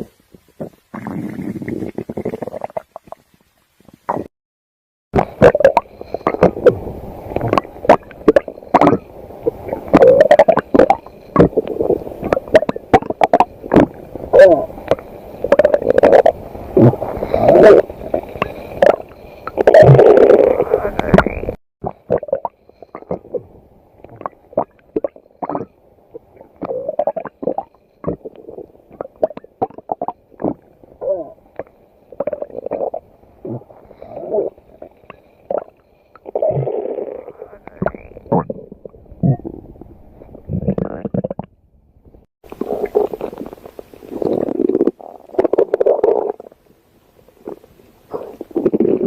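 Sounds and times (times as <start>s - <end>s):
hissy background noise: 0.0s - 4.3s, 5.3s - 21.5s, 42.5s - 49.0s
stomach growling and gurgling: 0.0s - 4.3s, 5.2s - 49.0s.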